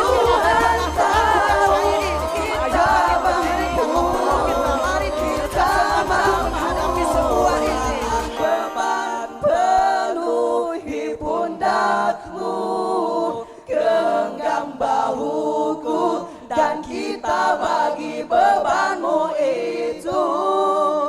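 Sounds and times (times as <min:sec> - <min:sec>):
vocal group singing in harmony: 0:00.0 - 0:21.0.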